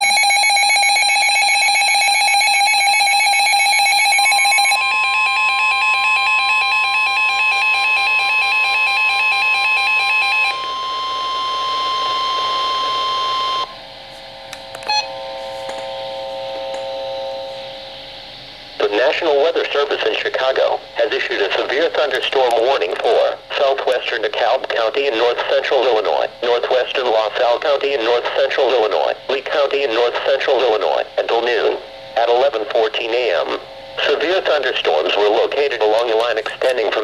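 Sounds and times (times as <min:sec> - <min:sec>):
pulsing electronic alarm beeps: 0:00.0 - 0:13.8
steady weather radio warning tone: 0:00.0 - 0:13.8, 0:18.8 - 0:37.0.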